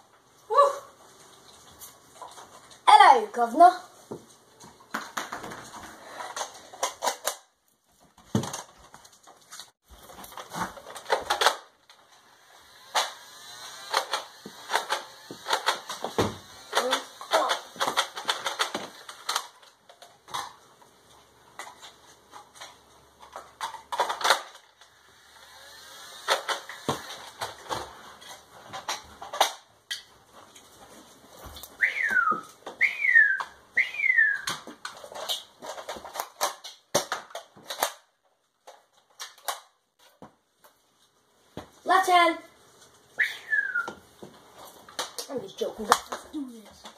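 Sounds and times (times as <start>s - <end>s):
plastic toy blaster clicks: 12.7s - 19.6s, 23.6s - 27.8s
falling whistle-like tones: 31.8s - 34.6s, 43.2s - 44.0s.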